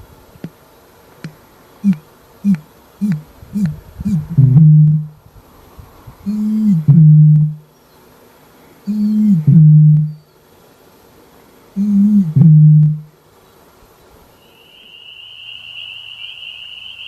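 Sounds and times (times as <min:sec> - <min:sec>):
bird hooting call: 0:01.8 - 0:05.1, 0:06.3 - 0:07.6, 0:08.9 - 0:10.2, 0:11.8 - 0:13.1, 0:14.4 - 0:17.0.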